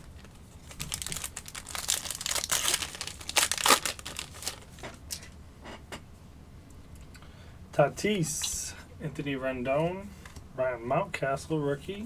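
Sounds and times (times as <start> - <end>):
wrapper tearing and crinkling: 0.1 - 4.9.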